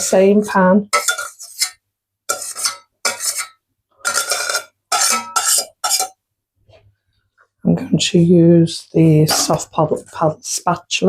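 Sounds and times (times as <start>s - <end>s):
utensil scraping a cooking pan: 0.0s - 6.8s, 9.3s - 10.2s.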